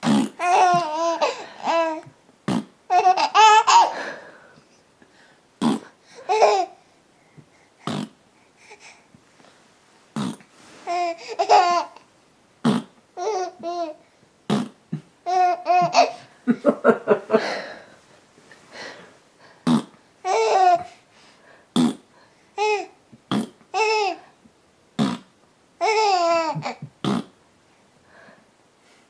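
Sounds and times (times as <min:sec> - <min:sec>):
baby giggling: 0:00.0 - 0:02.0, 0:02.9 - 0:04.0, 0:06.3 - 0:06.8, 0:10.9 - 0:12.0, 0:15.2 - 0:17.6, 0:20.3 - 0:20.9, 0:25.8 - 0:26.9.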